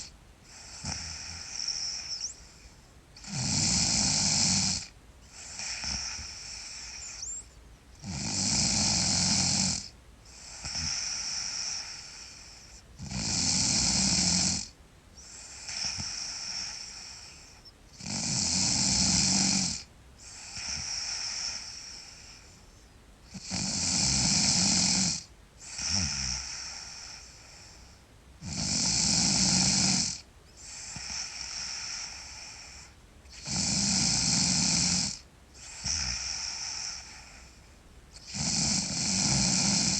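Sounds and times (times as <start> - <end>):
girl snoring loudly: 0.0 - 2.3, 3.2 - 7.3, 8.0 - 12.3, 13.0 - 14.7, 15.3 - 17.3, 18.0 - 22.1, 23.3 - 27.3, 28.4 - 32.7, 33.3 - 37.3, 38.2 - 39.9
quiet breathing: 0.0 - 23.7, 24.6 - 39.9.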